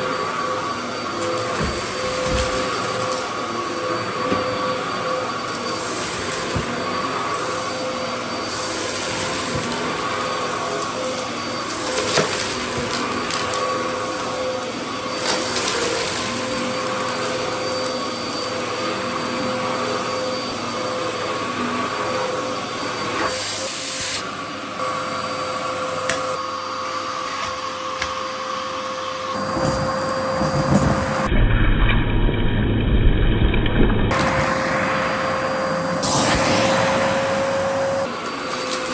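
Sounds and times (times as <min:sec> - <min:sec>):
vacuum cleaner motor whine: 0:00.0 - 0:31.6, 0:34.1 - 0:38.9
rushing air surges: 0:34.1 - 0:38.2.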